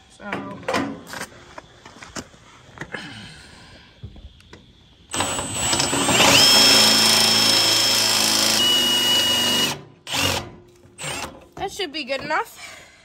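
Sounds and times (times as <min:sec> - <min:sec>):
electric drill boring steel: 0:05.1 - 0:11.3.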